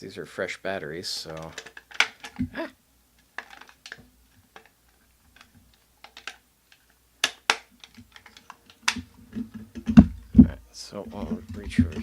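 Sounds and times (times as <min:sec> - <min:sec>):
plastic clicks and taps: 0:05.3 - 0:10.6.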